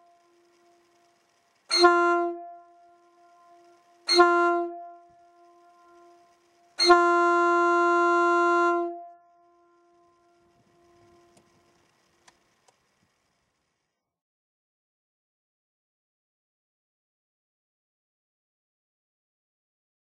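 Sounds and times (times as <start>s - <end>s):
locomotive horn blasts: 1.7s - 11.4s.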